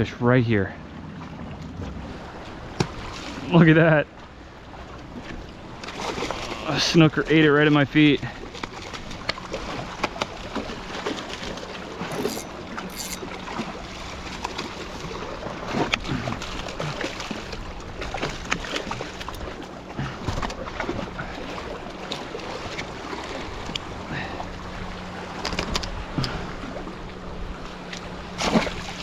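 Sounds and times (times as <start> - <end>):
seawater sloshing and splashing: 4.2 - 6.6, 8.3 - 25.4, 26.0 - 29.0.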